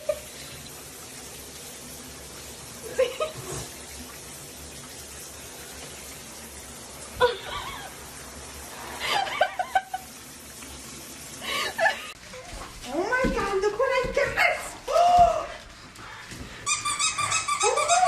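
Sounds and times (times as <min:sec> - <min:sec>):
person laughing: 0:02.8 - 0:03.5, 0:07.2 - 0:08.0, 0:09.0 - 0:10.1.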